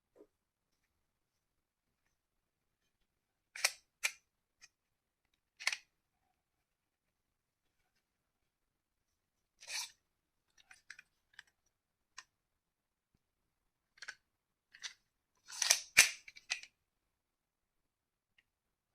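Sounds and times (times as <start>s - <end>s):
toy pistol plastic clicks: 15.5s - 16.6s.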